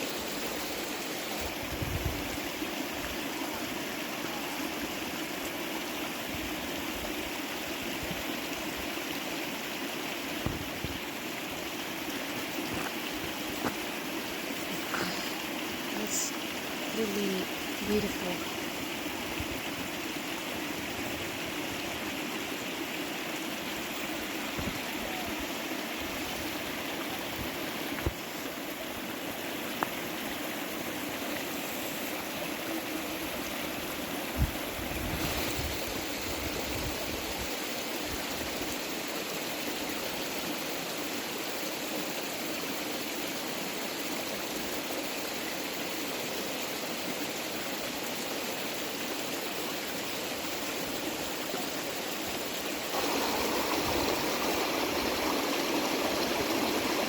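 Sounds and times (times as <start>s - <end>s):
creek water rushing: 0.0s - 57.0s.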